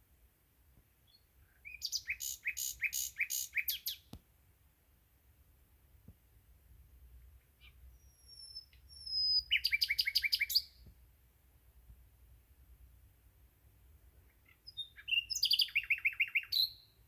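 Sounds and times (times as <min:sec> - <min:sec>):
nightingale singing: 0:01.0 - 0:04.2, 0:07.4 - 0:10.9, 0:14.3 - 0:17.0.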